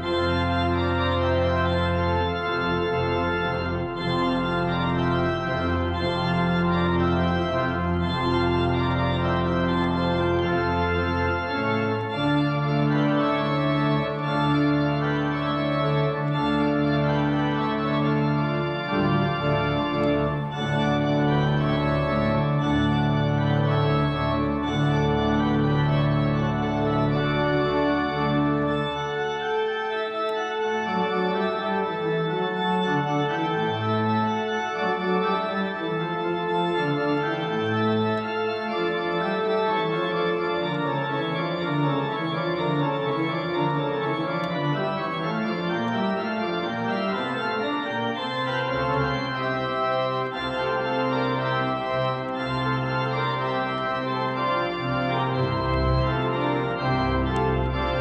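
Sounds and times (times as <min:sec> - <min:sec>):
deep organ bass notes: 0:00.0 - 0:58.0
organ playing held chords: 0:00.0 - 0:58.0.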